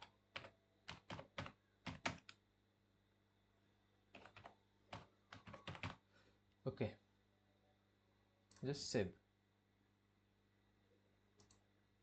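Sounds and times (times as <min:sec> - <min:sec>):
faint keyboard typing: 0:00.0 - 0:02.4, 0:04.1 - 0:06.1, 0:11.4 - 0:11.7.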